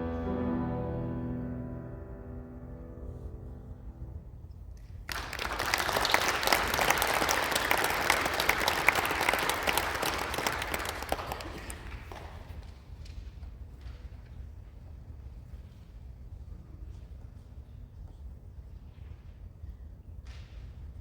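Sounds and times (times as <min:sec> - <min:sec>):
violin and piano chord: 0:00.0 - 0:04.5
audience applauding: 0:05.0 - 0:12.6.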